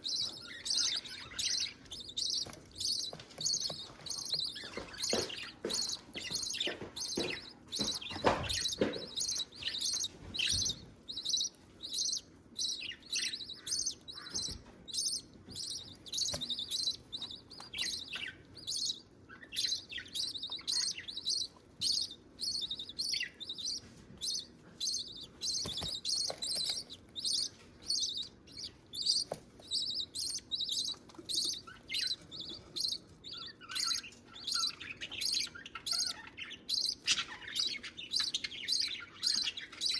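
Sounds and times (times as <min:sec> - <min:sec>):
chicks chirping: 0:00.0 - 0:39.9.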